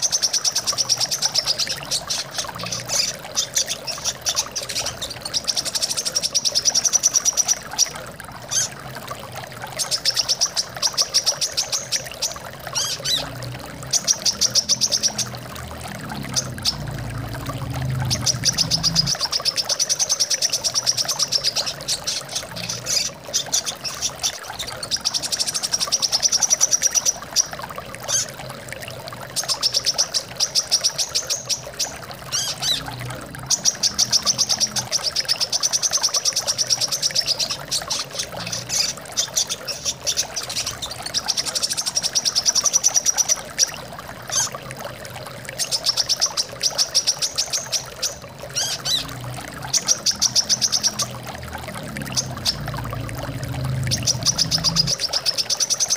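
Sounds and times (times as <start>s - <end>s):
running water: 0.0s - 55.9s
bird twittering trills: 9.8s - 15.5s, 16.1s - 28.3s, 29.3s - 44.6s, 45.6s - 51.3s, 52.0s - 55.9s.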